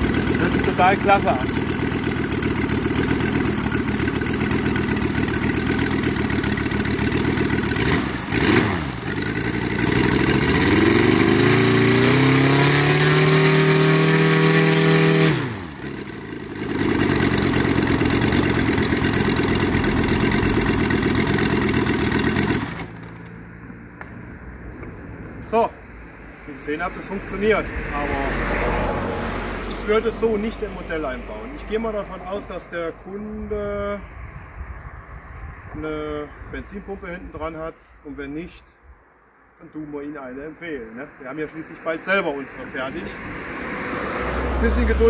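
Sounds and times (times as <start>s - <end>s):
model aircraft engine revving: 0.0s - 23.3s.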